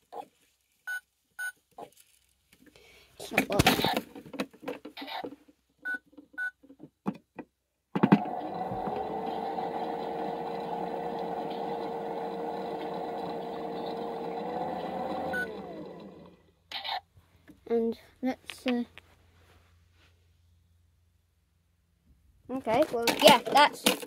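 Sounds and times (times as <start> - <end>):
toy motor humming: 9.8 - 16.4.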